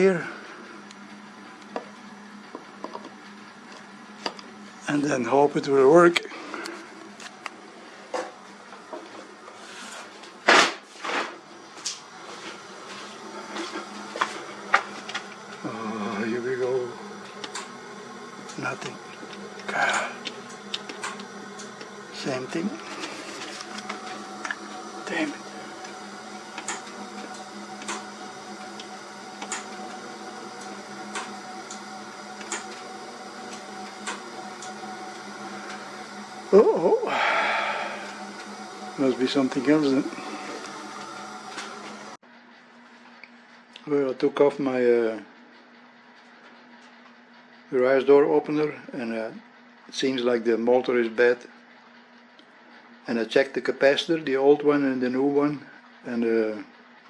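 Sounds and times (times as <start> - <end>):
stalled motor humming: 12.1 - 42.2.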